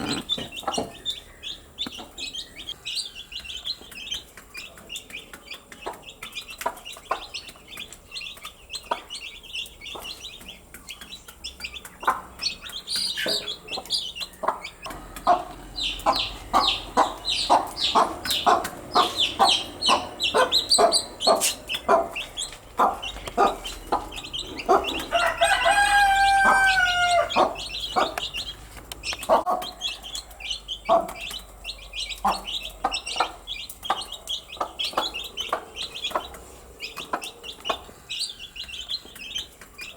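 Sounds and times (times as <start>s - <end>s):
baby chicks peeping: 0.0s - 39.9s
hen clucking: 0.0s - 39.9s
rooster crowing: 24.6s - 27.7s.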